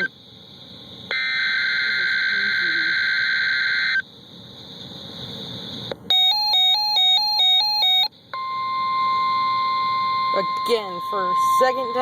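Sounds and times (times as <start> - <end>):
screechy digital data tones: 1.1 - 4.1, 6.8 - 12.0
steady warning alarm tone: 1.1 - 4.1, 6.1 - 12.0
two-pitch electronic alert tone: 8.4 - 12.0.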